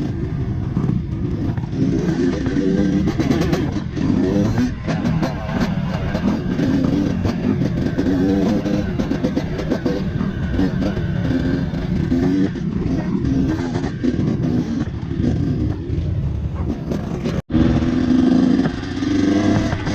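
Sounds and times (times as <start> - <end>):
dirt bike engine revving: 0.0 - 19.9.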